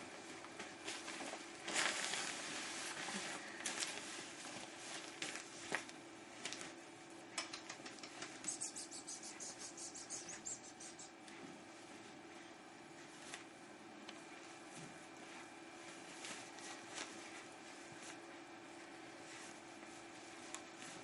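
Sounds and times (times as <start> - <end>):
rustling: 0.4 - 6.8, 14.3 - 21.0.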